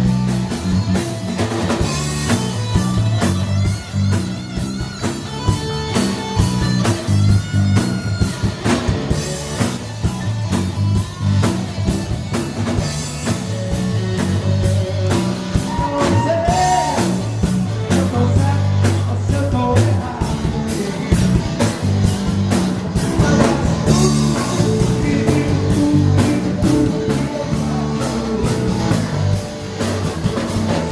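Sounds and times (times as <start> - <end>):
bass line: 0.0 - 30.9
drum kit beat: 0.0 - 30.9
electric guitar: 0.0 - 30.9
person singing: 14.9 - 21.4, 23.0 - 29.4.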